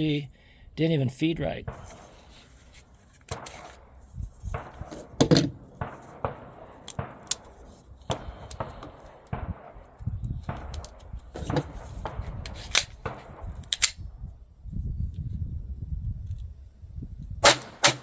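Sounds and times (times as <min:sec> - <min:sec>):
pistol shots cracking: 0:04.5 - 0:14.0, 0:17.4 - 0:18.0
metallic pistol clicks: 0:06.8 - 0:11.2, 0:12.4 - 0:14.0.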